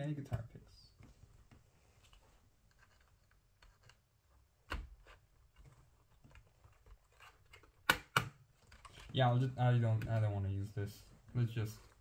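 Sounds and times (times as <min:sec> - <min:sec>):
small tools and plastic clicking: 0:02.7 - 0:04.1.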